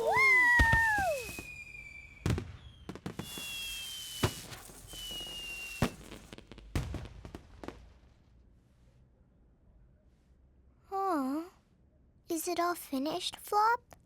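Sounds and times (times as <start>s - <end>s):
firework whistles: 0.0s - 6.3s
fireworks bangs with crackle: 0.0s - 8.5s.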